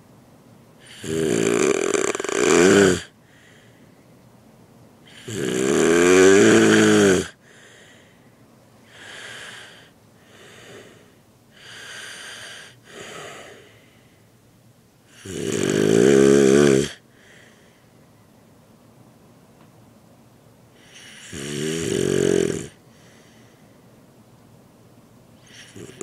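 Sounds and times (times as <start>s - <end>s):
loud snoring: 0.8s - 3.2s, 5.1s - 7.4s, 15.1s - 17.0s, 20.8s - 22.8s, 25.4s - 26.0s.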